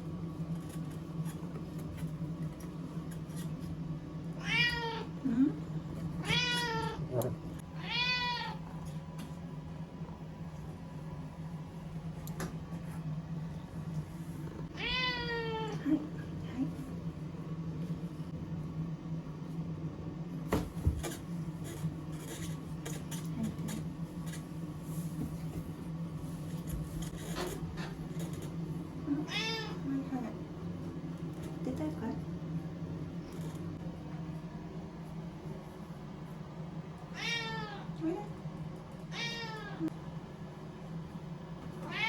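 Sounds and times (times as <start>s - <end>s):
steady low hum: 0.0s - 42.0s
cat meowing: 4.4s - 5.1s, 6.2s - 7.0s, 7.8s - 8.6s, 37.1s - 37.9s, 39.1s - 39.9s.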